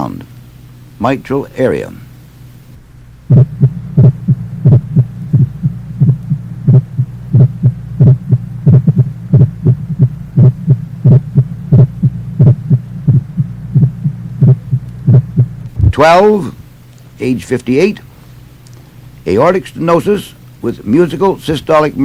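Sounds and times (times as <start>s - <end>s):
steady low hum: 0.0s - 22.0s
heartbeat through stethoscope: 3.3s - 16.1s.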